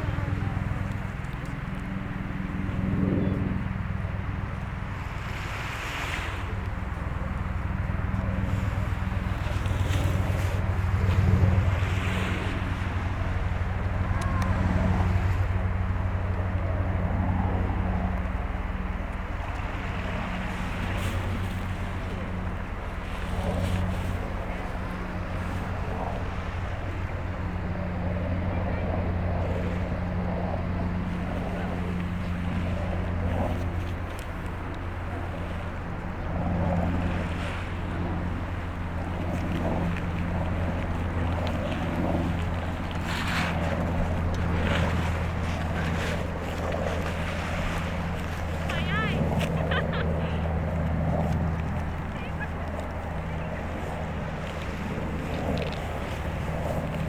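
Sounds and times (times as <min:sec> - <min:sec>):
steady low engine drone: 0:00.0 - 0:57.0
surf on the shore: 0:00.0 - 0:57.0.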